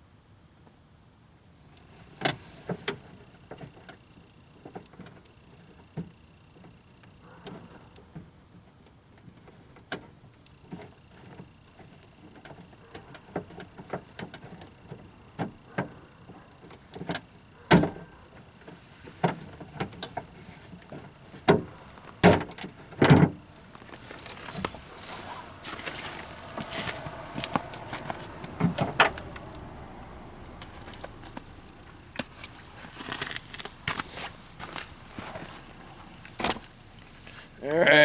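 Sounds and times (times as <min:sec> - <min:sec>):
clicks and knocks inside car door: 0:09.5 - 0:36.8.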